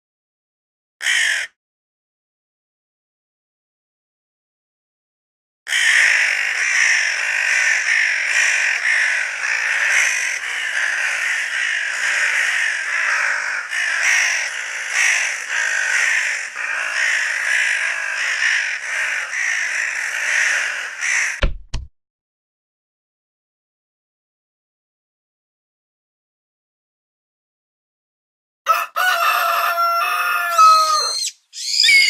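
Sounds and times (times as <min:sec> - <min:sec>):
crows cawing: 0:01.0 - 0:01.6, 0:05.7 - 0:21.4, 0:28.7 - 0:32.0.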